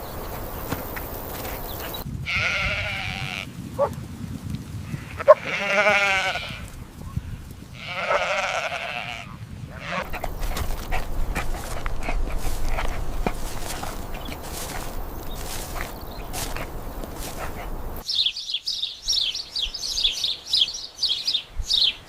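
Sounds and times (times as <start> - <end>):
shuffling footsteps: 0.0 - 2.1, 10.0 - 18.1
farm animal bleating: 2.2 - 3.5, 4.8 - 18.0.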